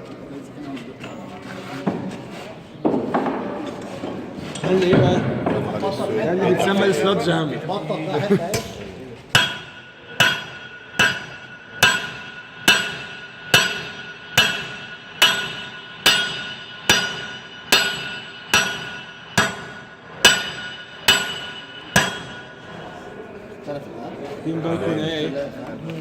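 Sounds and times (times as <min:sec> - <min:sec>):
sledgehammer striking anvil: 0:08.5 - 0:23.1.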